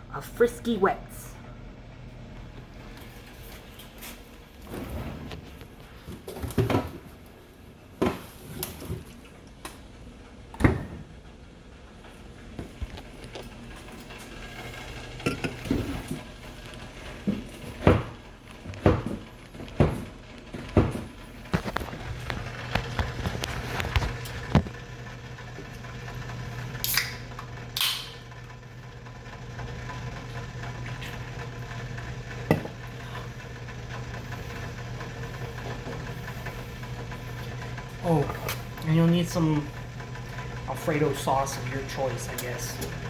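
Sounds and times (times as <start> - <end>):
steady low hum: 0.0 - 43.0
dishes and pans clattering: 15.3 - 15.8.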